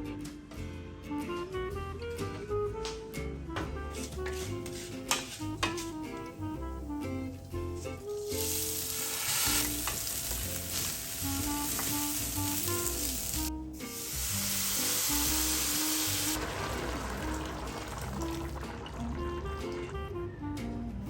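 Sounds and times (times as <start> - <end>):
soft background music: 0.0 - 21.0
food sizzling in a pan: 8.0 - 18.6.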